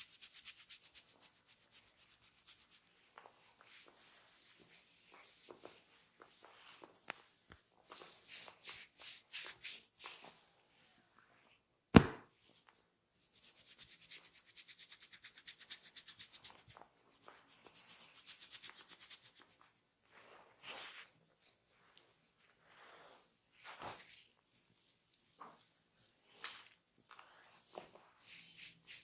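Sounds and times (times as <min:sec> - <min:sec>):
hands rubbing skin: 0:00.0 - 0:10.4, 0:12.5 - 0:22.0, 0:26.3 - 0:29.0
loud hand smack: 0:11.9 - 0:12.3.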